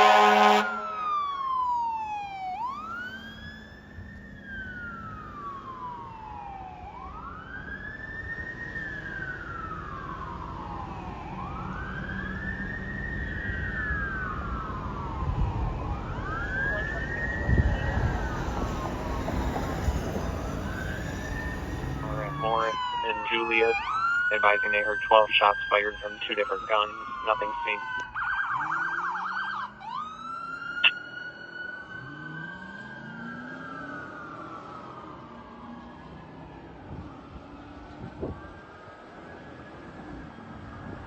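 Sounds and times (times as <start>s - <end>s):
air horn blast: 0.0s - 1.1s
fire engine siren wailing: 0.0s - 41.0s.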